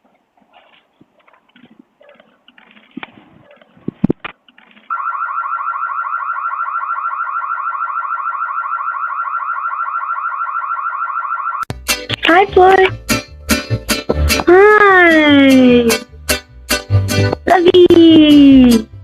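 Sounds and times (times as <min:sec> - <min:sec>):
pulsing electronic alarm tone: 0:04.9 - 0:11.7.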